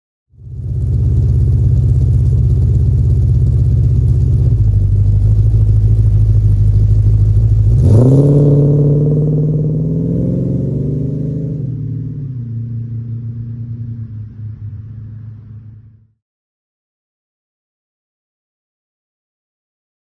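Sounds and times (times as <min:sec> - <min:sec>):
car engine rumbling and revving: 0:00.4 - 0:16.1.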